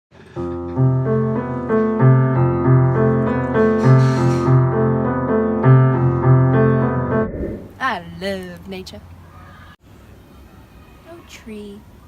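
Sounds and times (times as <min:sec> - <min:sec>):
piano music: 0:00.2 - 0:07.8.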